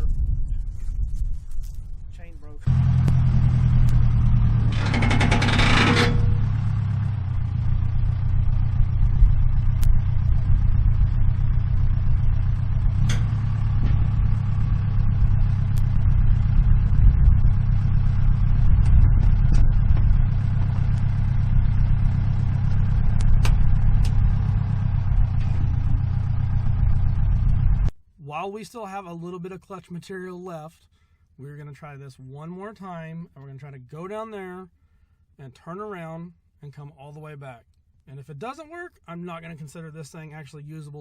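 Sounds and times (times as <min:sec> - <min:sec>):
truck engine running: 0:02.6 - 0:27.9.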